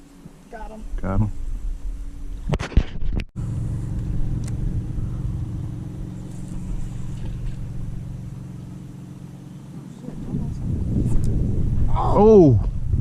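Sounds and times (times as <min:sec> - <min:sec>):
boat engine running: 0:03.4 - 0:13.0.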